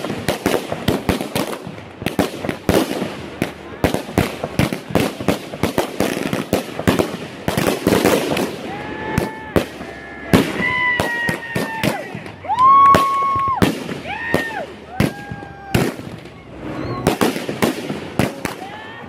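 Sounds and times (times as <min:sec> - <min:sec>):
firework bangs and crackling pops: 0:00.0 - 0:19.0
firework whistling tones: 0:05.0 - 0:19.0.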